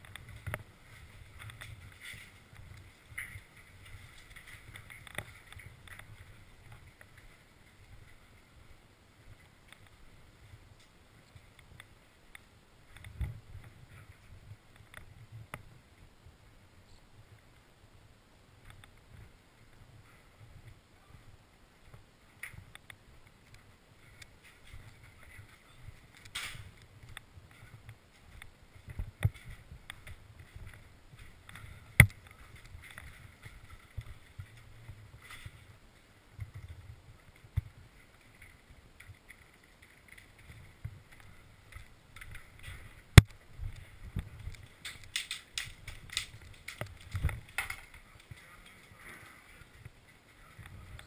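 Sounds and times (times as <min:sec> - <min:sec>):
footsteps: 0:00.0 - 0:10.0
handling and movement noise: 0:00.0 - 0:15.8, 0:21.8 - 0:51.0.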